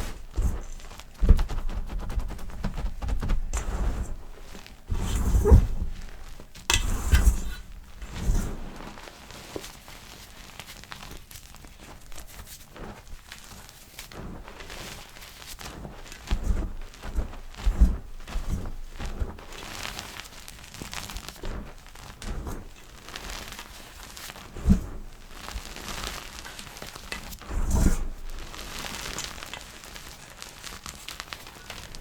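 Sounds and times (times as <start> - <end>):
dull thumps: 0.0 - 8.8.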